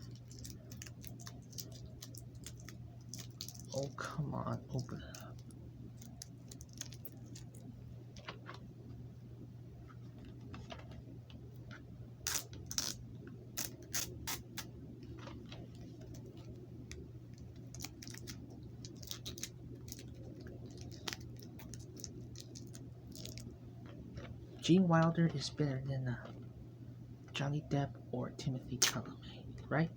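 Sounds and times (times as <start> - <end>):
plastic wrapping crinkling: 0.0 - 8.6, 11.7 - 13.0, 13.6 - 24.6
steady low hum: 0.0 - 29.9.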